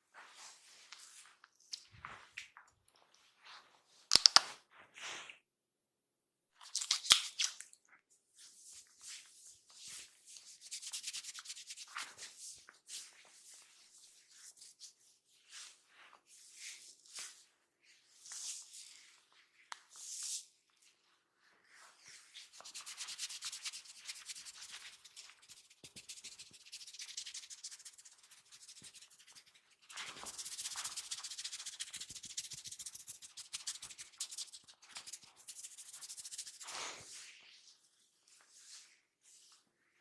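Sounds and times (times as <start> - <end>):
hands rubbing in a massage: 8.4 - 17.5, 21.7 - 39.6.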